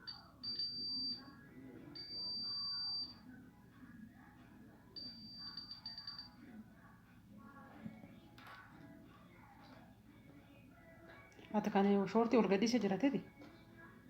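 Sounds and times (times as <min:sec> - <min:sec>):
multimeter continuity beeps: 0:00.0 - 0:03.2, 0:04.9 - 0:06.5.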